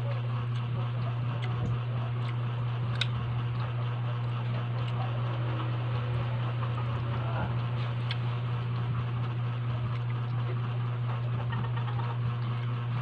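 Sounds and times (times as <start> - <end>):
steady low hum: 0.0 - 13.0
light clicks from eating: 1.3 - 3.7.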